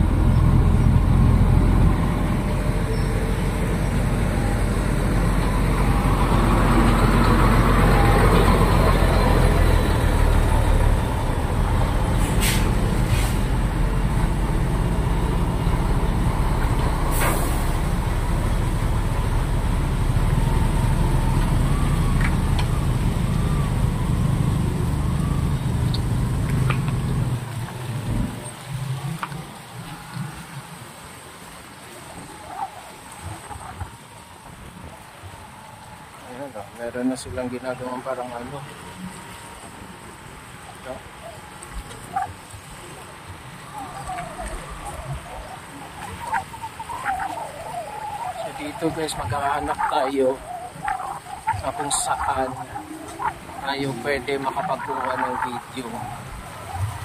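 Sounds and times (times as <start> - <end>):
road noise: 0.0 - 57.0
vehicle engine rumble: 0.0 - 57.0
short sharp hisses: 12.2 - 13.5.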